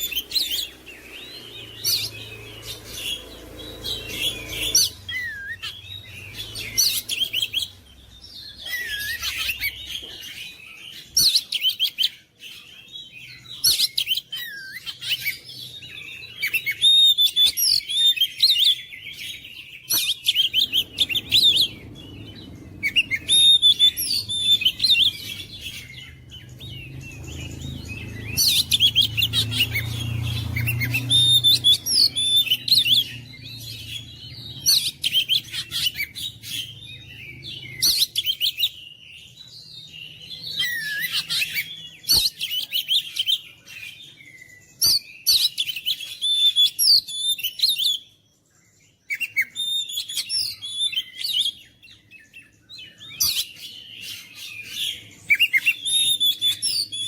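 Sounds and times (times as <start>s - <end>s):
bird singing whistles and chirps: 0.0s - 57.0s.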